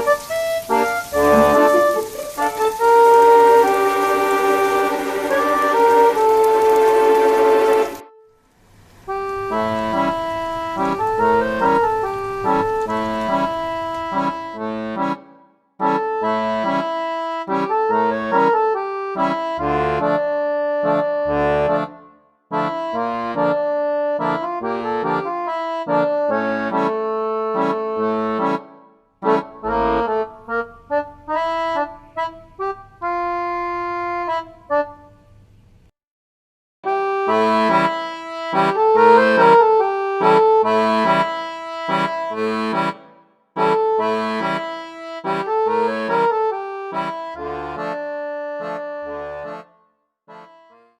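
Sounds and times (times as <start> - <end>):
reedy accordion-like melody: 0.0 - 8.3, 9.1 - 35.4, 36.8 - 50.9.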